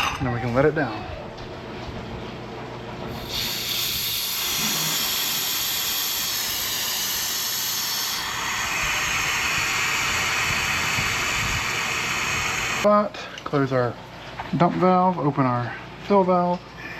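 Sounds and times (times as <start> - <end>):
compressed air hissing: 3.1 - 12.9.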